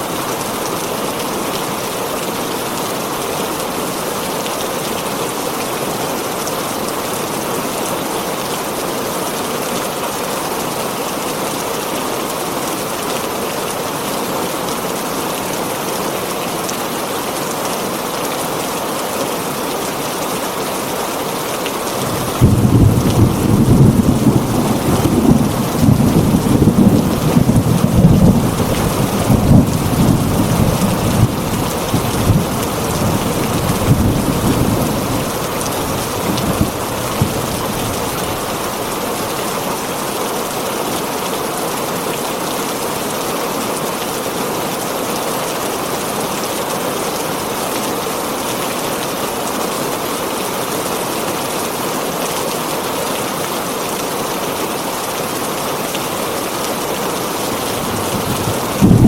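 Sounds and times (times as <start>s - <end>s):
heavy rain on a tin roof: 0.0s - 59.0s
thunder rumbling: 22.0s - 35.3s, 57.5s - 59.0s.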